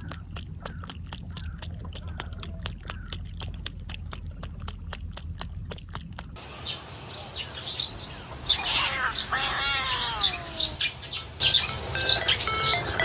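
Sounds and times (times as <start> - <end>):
crunchy chewing: 0.0 - 6.4.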